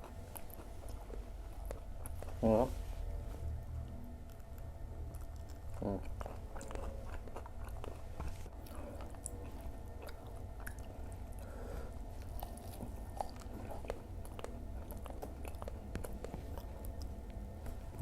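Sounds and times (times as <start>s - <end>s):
steady low hum: 0.0s - 18.0s
mouth chewing and biting: 4.3s - 11.1s, 12.2s - 18.0s.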